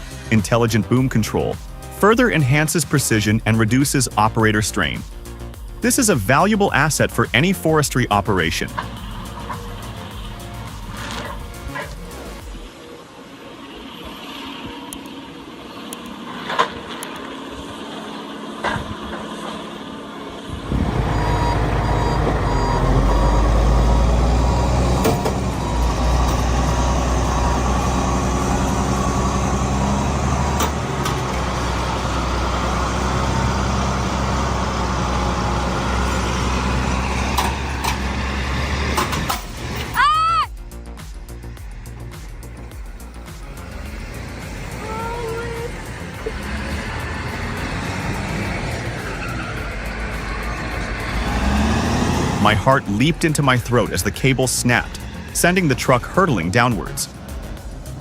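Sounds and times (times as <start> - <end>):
heavy engine running: 0.0 - 58.0
reversing alarm beeping: 20.6 - 31.0.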